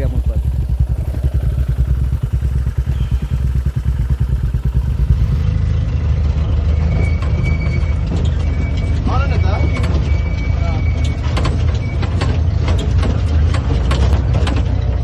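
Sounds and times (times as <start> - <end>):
motorcycle engine running: 0.0 - 6.6.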